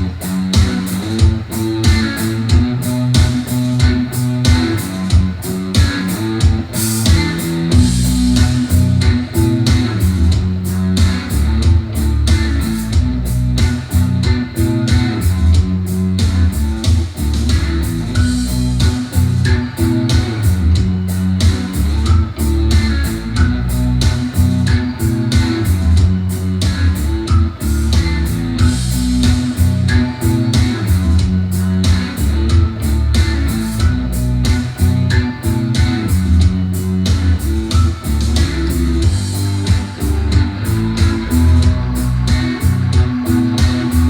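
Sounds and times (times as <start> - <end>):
guitar and bass music: 0.0 - 44.0
steady drum beat: 0.0 - 44.0.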